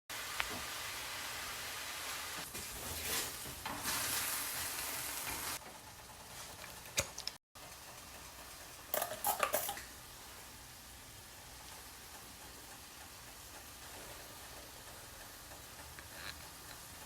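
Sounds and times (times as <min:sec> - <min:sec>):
faint steady sizzle: 0:00.1 - 0:17.0
cookware clattering: 0:08.9 - 0:09.9.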